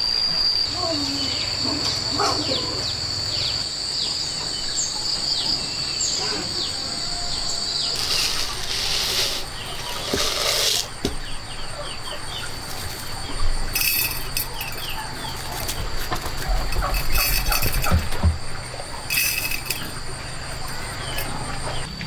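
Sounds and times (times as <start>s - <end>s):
high insect drone: 0.0s - 22.0s
chickens clucking: 4.4s - 22.0s
bursts of hissing noise: 7.7s - 11.3s.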